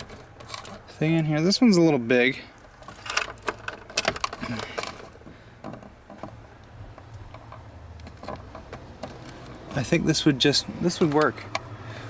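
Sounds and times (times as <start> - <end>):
clicks and knocks of part handled: 2.8 - 9.6, 11.0 - 11.8.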